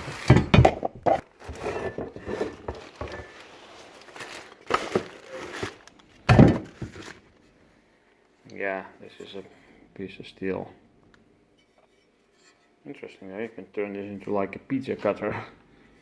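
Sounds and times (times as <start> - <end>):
knocks of items shifted: 0.0 - 7.2
rubbish rustling and crinkling: 0.0 - 7.4.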